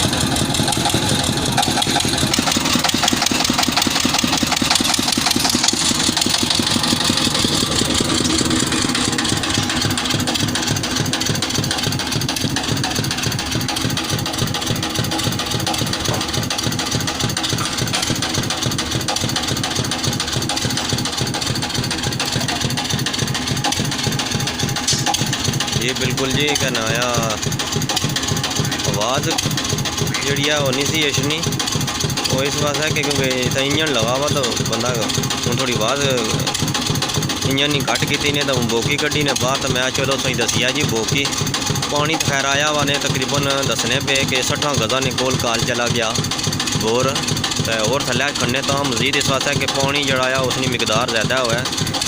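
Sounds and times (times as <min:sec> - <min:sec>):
drilling rig engine pulsing: 0:00.0 - 0:52.0.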